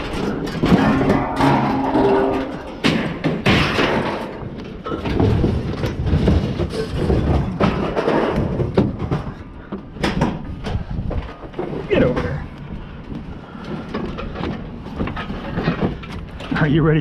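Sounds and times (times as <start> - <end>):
scrap metal clanking: 0.0 - 9.5.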